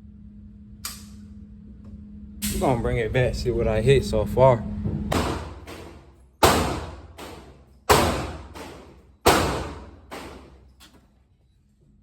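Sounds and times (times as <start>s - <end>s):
gunshots echoing: 5.1s - 10.6s.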